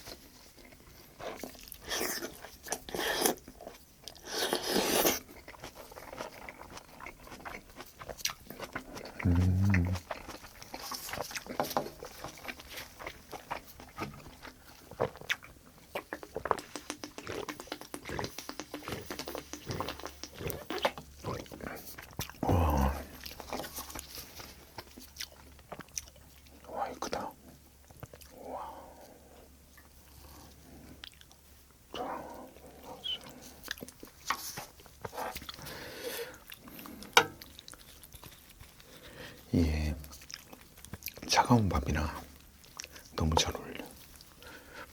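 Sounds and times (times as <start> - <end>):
wet chewing: 0.0 - 44.9
lip smacks and mouth clicks: 0.1 - 28.4, 29.8 - 35.7, 40.0 - 41.5.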